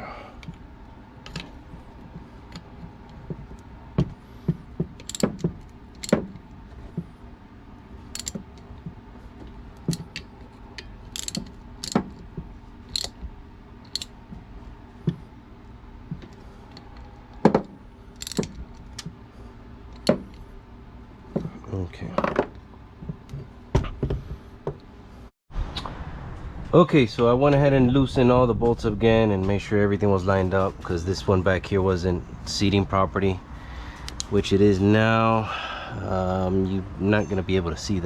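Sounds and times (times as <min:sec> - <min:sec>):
ratchet wrench clicking: 0:05.0 - 0:06.3, 0:08.1 - 0:08.7, 0:10.8 - 0:12.2, 0:12.9 - 0:13.2, 0:13.9 - 0:14.1, 0:18.2 - 0:18.6.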